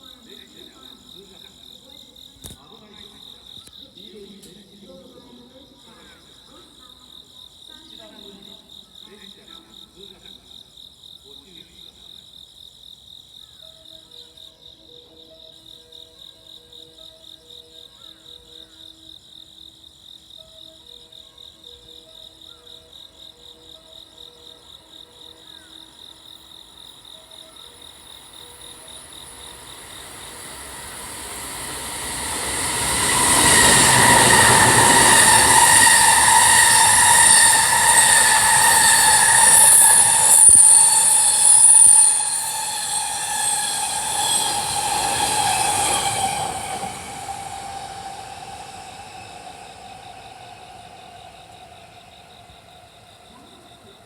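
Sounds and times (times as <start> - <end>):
freight train passing: 0.0 - 3.4, 24.4 - 54.0
crickets chirping: 0.0 - 54.0
high whine: 29.2 - 54.0.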